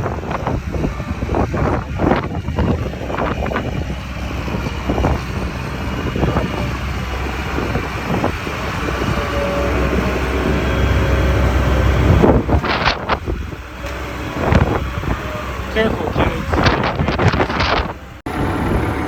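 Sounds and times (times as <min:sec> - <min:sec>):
truck diesel engine rumbling: 0:00.0 - 0:19.0.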